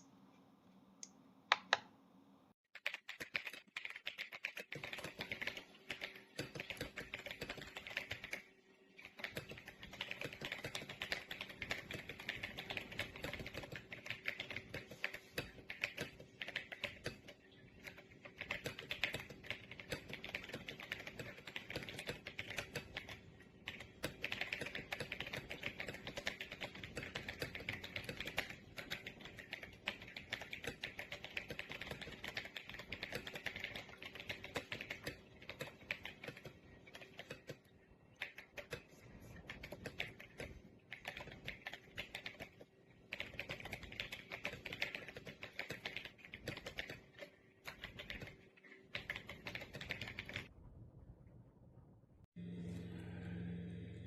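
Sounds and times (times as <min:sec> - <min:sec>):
mechanical keyboard typing: 0:02.8 - 0:37.6, 0:38.2 - 0:50.5.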